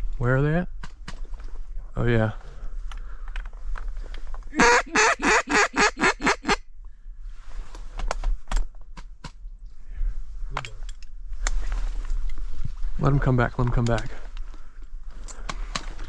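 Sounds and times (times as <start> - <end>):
duck call quacking: 4.5 - 6.6.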